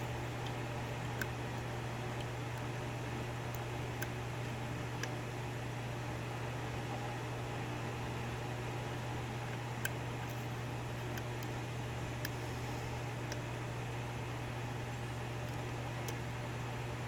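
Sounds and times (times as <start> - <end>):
low hum and hiss: 0.0 - 17.0.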